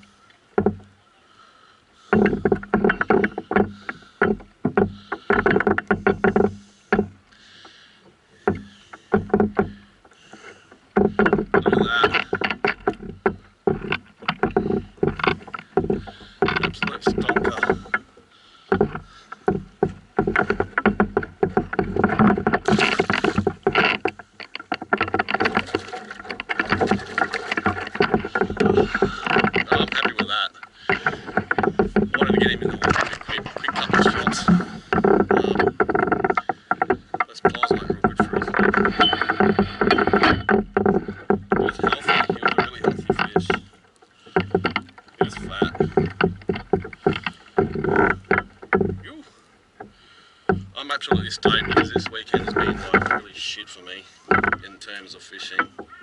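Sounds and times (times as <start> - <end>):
knocking against canoe hull: 0.0 - 1.0, 2.0 - 7.8, 8.4 - 56.0.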